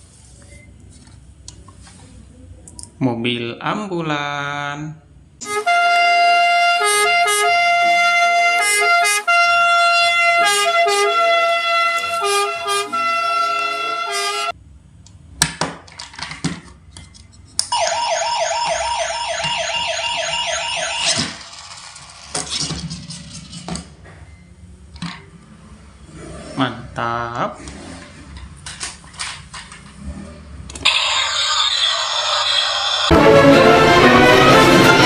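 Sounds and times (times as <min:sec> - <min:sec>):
electronic toy tune: 0:17.7 - 0:21.4
fast warbling toy siren: 0:17.7 - 0:21.5.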